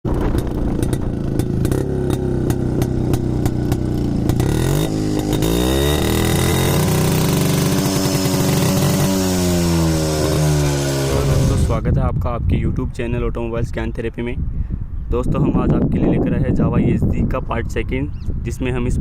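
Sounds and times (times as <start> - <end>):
motorcycle engine idling and revving: 0.0 - 11.9.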